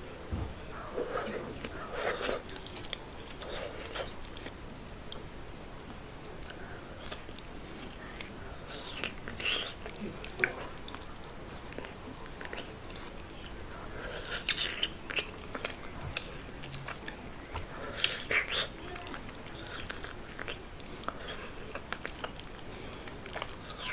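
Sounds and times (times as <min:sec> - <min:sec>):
person chewing crunchy food: 0:01.0 - 0:05.2, 0:06.0 - 0:23.9.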